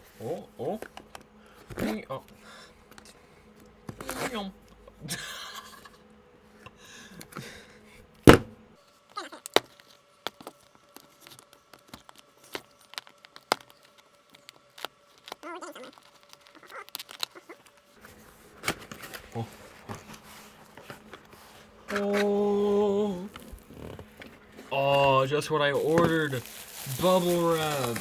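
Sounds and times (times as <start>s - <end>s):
cardboard and plastic crackling: 0.6s - 4.5s, 9.2s - 28.0s
loud sharp snap: 8.3s - 8.6s
packing tape tearing: 9.4s - 18.0s, 18.6s - 28.0s.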